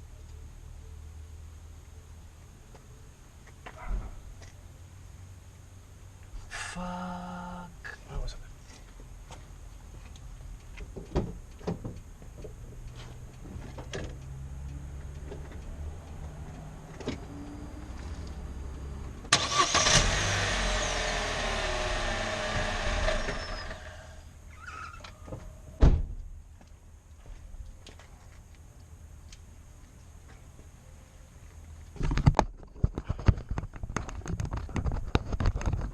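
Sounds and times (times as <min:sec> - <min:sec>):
car engine running: 0:19.4 - 0:24.2
harsh rasping brake noise: 0:20.9 - 0:24.3
loud thump: 0:25.8 - 0:26.2.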